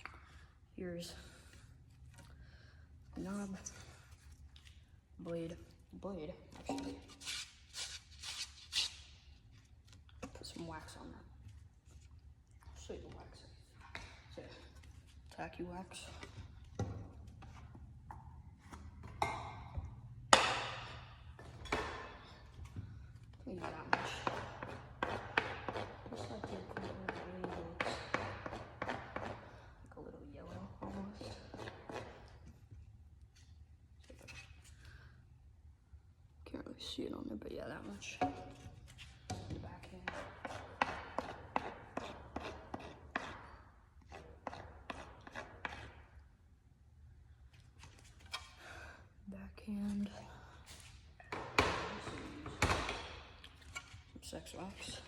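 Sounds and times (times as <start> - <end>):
wax scraping on stick blade: 40.1 - 46.1.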